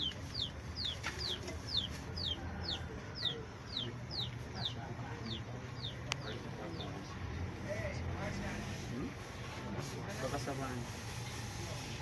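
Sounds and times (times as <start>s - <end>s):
bird chirping: 0.0s - 7.2s.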